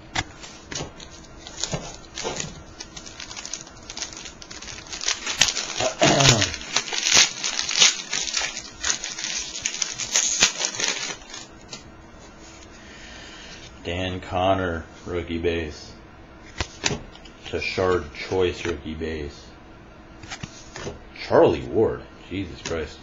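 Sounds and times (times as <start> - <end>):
foil wrapper tearing and crinkling: 0.2 - 11.6.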